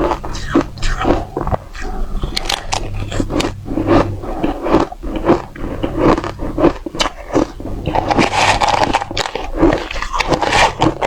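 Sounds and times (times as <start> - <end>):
crunching frozen ice: 2.2 - 11.0.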